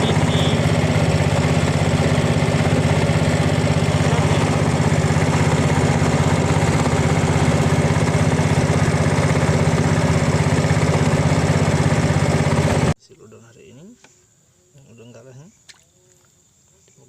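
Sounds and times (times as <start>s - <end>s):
small engine droning: 0.0s - 13.0s.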